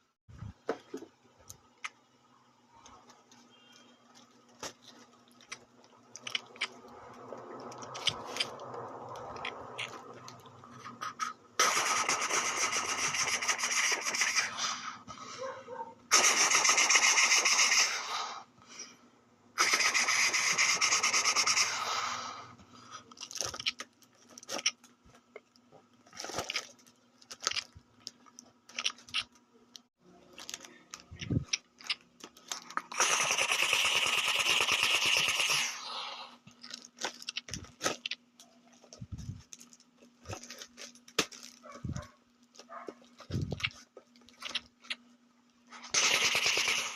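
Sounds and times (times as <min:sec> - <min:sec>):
toy gun rattling bursts: 0:11.6 - 0:14.5, 0:16.1 - 0:18.0, 0:19.6 - 0:21.7, 0:32.9 - 0:35.8, 0:45.9 - 0:46.9.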